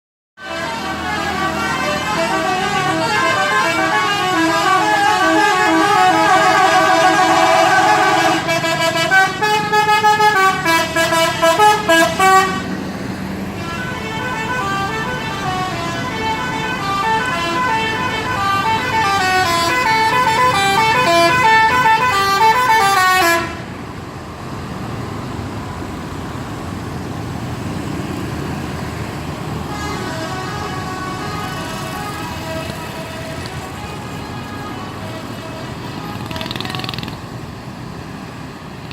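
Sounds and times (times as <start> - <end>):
musical bus air horn: 0.4 - 12.8, 13.5 - 23.8, 29.5 - 37.2
vehicle noise: 0.4 - 38.9.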